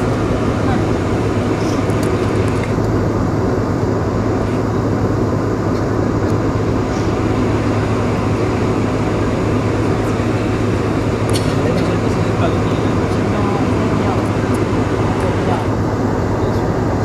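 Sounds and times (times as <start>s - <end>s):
airplane cabin rush and engine hum: 0.0s - 17.0s.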